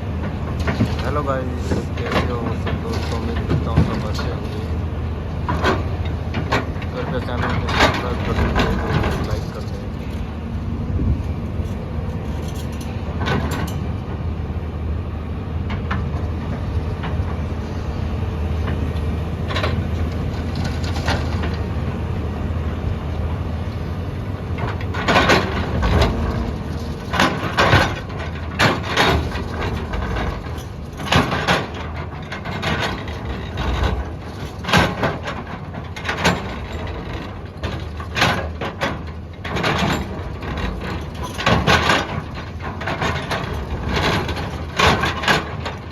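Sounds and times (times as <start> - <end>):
backhoe diesel engine running: 0.0 - 45.9.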